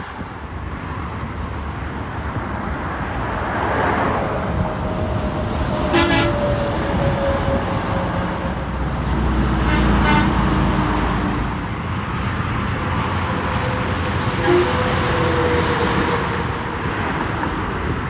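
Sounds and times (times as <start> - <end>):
road traffic: 0.0 - 18.0
vehicle horn toots: 5.8 - 6.5, 9.6 - 10.5, 14.4 - 15.1.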